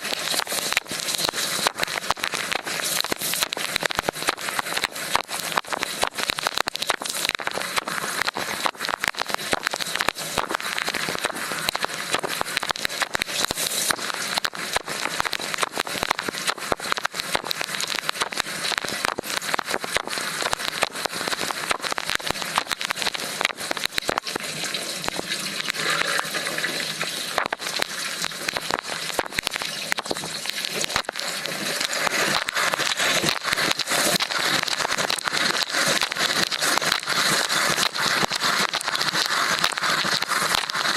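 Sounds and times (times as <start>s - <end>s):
spraying water: 0.0s - 40.9s
thin high whine: 24.2s - 35.6s.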